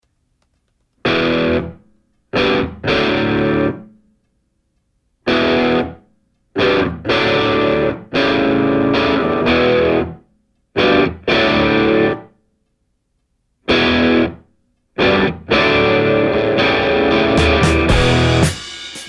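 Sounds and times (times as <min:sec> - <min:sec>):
distorted electric guitar chords: 0:01.1 - 0:01.8, 0:02.4 - 0:03.8, 0:05.3 - 0:06.0, 0:06.6 - 0:10.2, 0:10.8 - 0:12.3, 0:13.7 - 0:14.4, 0:15.0 - 0:19.0.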